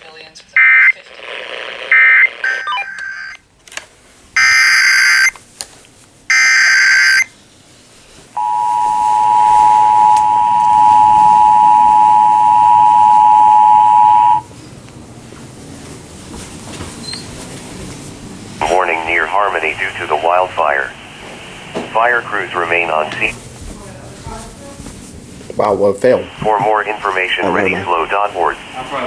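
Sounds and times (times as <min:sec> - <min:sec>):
screeching data bursts: 0:08.4 - 0:14.4
two-tone attention signal: 0:08.4 - 0:14.4.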